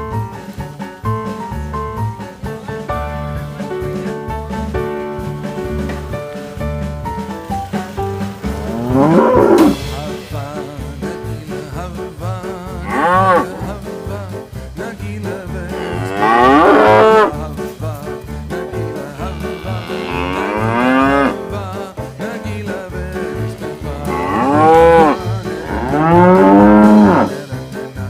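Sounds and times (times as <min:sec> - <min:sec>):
background music with steady beat: 0:00.0 - 0:28.0
cattle mooing: 0:08.5 - 0:09.8, 0:12.7 - 0:13.8, 0:15.7 - 0:17.4, 0:19.2 - 0:21.4, 0:23.9 - 0:27.4.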